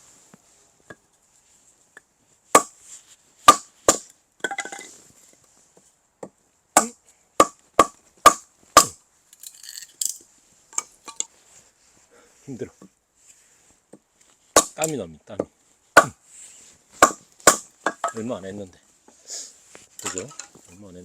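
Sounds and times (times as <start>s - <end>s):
axe splitting firewood: 2.5s - 2.8s, 3.5s - 4.9s, 6.8s - 9.0s, 14.5s - 15.0s, 16.0s - 16.2s, 17.0s - 18.3s, 20.0s - 20.8s
wood pieces rattling: 20.0s - 20.6s.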